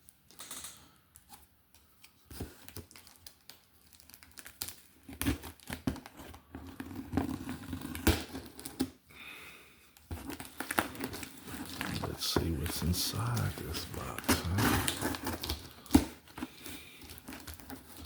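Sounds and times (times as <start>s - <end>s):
packaging crinkling and ripping: 2.4s - 8.9s, 10.2s - 12.1s, 12.7s - 18.0s.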